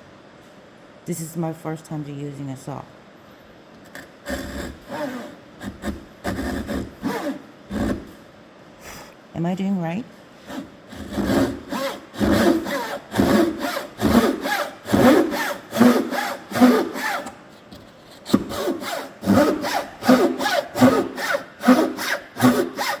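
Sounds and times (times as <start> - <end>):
hand saw cutting wood: 3.9 - 8.2, 10.5 - 23.0.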